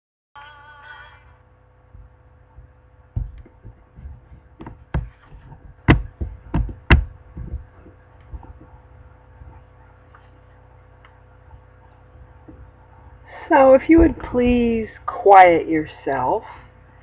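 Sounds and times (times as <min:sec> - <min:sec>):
steady low hum: 0:00.4 - 0:17.0
knocks and thumps: 0:02.0 - 0:09.7, 0:12.2 - 0:12.8, 0:13.9 - 0:14.9.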